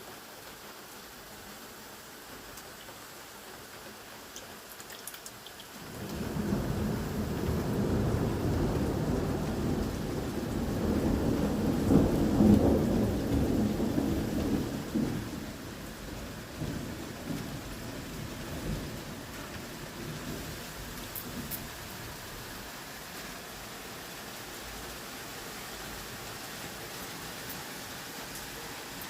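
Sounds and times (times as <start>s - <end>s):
steady rain: 0.0s - 29.0s
thunder rumbling: 6.0s - 22.7s.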